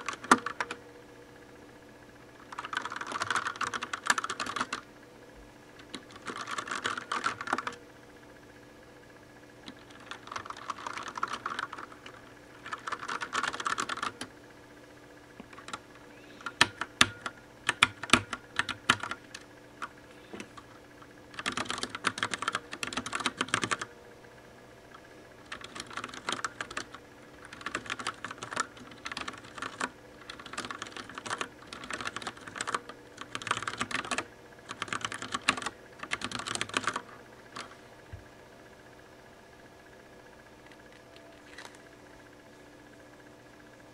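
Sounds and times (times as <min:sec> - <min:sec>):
mechanical keyboard typing: 0:00.0 - 0:00.8, 0:02.4 - 0:04.8, 0:05.8 - 0:07.8, 0:09.6 - 0:14.3, 0:15.4 - 0:15.8, 0:16.4 - 0:20.7, 0:21.3 - 0:23.9, 0:25.4 - 0:37.7.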